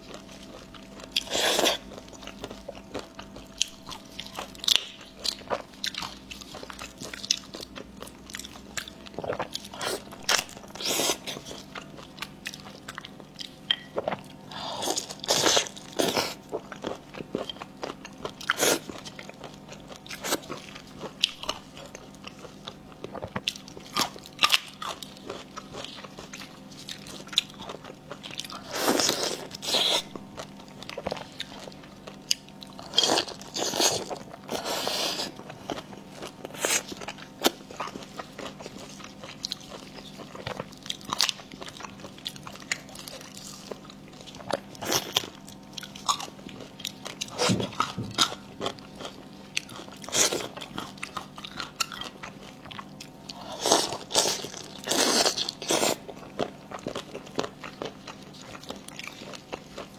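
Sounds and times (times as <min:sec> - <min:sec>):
food crunching: 0:00.0 - 0:59.9
person chewing food: 0:00.0 - 0:59.9.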